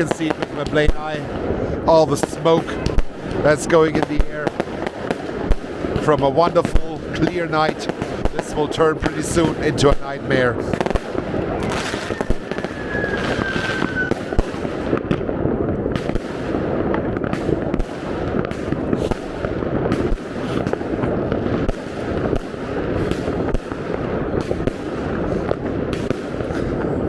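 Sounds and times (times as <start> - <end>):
fireworks crackling and banging: 0.0 - 27.0
firework whistle: 11.6 - 15.0.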